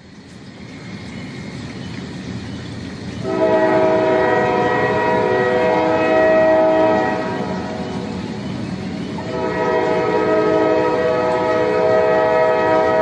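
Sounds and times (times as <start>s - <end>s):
moving train rumbling: 0.0s - 13.0s
train horn blast: 3.2s - 8.1s, 9.2s - 13.0s.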